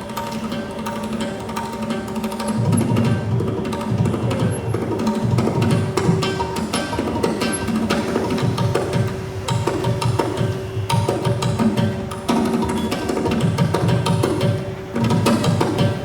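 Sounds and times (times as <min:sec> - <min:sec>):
rapid percussion strokes: 0:00.0 - 0:16.0.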